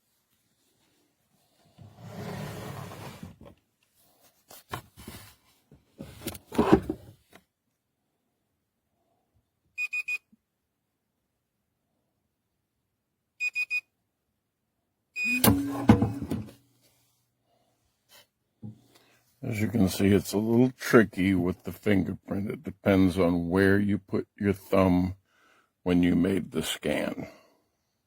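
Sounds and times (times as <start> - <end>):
quick electronic beeps: 15.2 - 15.9
knock against metal box: 15.5 - 16.5.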